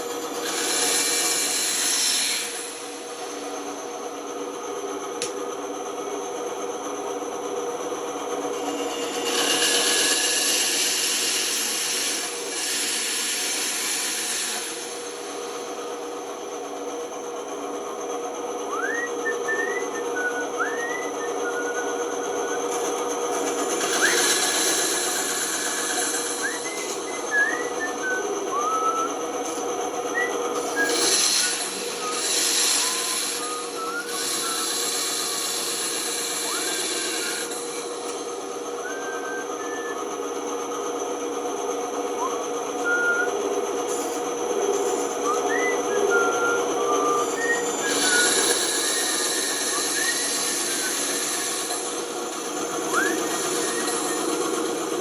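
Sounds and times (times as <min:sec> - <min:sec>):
band saw cutting wood: 0:00.0 - 0:03.9, 0:08.3 - 0:16.6, 0:18.7 - 0:40.2, 0:42.2 - 0:55.0
woodworking power tool running: 0:00.0 - 0:55.0
saw blade squeaks: 0:08.6 - 0:15.6, 0:18.8 - 0:40.0, 0:42.2 - 0:55.0
wood being cut gritty hiss: 0:30.8 - 0:38.1.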